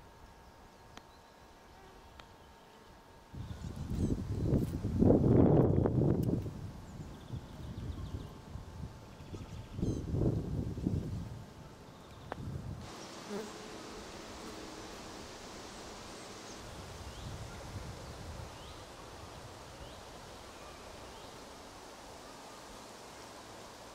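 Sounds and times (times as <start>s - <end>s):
steady hiss: 10.0s - 23.9s
insect buzzing: 12.8s - 23.9s.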